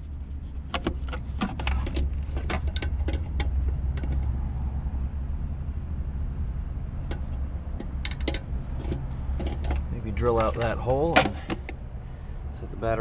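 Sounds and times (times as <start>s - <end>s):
clicks and clinks of car parts: 0.0s - 4.6s, 7.0s - 12.3s
steady low rumble: 0.0s - 13.0s.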